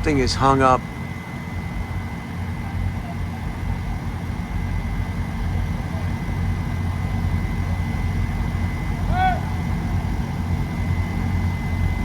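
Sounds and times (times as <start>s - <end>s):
faint high whine: 5.8s - 12.0s.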